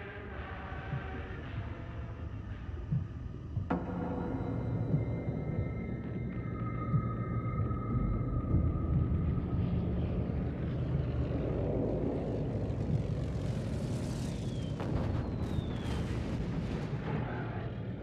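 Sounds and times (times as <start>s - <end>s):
propeller aircraft engines droning: 9.4s - 14.8s.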